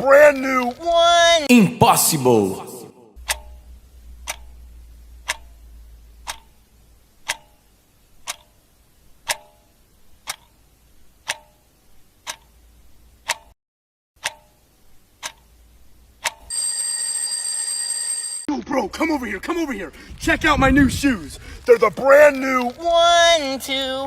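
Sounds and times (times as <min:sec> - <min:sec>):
low steady hum: 0:03.1 - 0:13.3, 0:14.5 - 0:16.4, 0:18.6 - 0:24.0
clock ticking: 0:03.2 - 0:13.6, 0:14.2 - 0:16.5.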